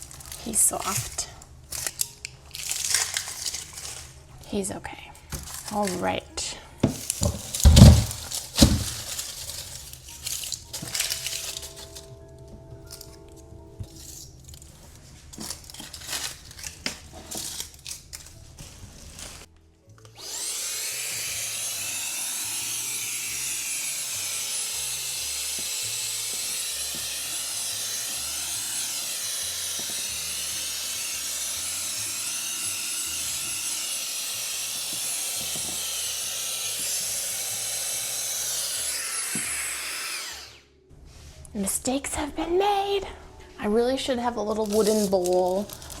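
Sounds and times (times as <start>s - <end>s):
electric motor whining: 6.9s - 9.9s, 20.1s - 40.7s.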